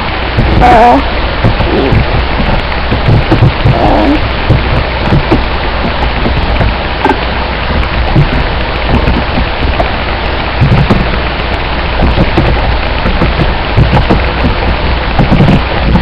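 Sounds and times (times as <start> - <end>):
microphone hiss: 0.0 - 16.0.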